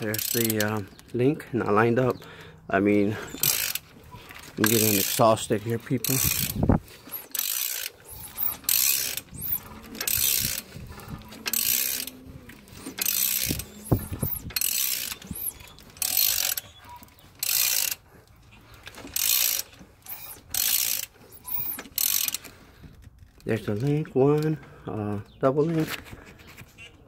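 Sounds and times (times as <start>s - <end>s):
ratchet wrench clicking: 0.0s - 1.0s, 3.3s - 16.7s, 17.4s - 18.0s, 18.9s - 22.5s.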